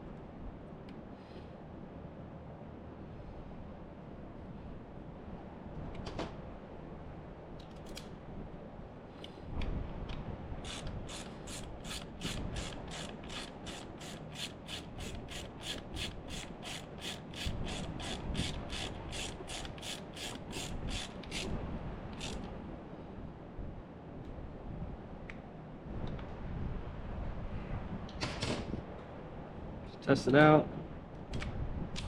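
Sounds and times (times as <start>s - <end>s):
hand ratchet clicking: 10.6s - 21.5s, 22.2s - 22.5s.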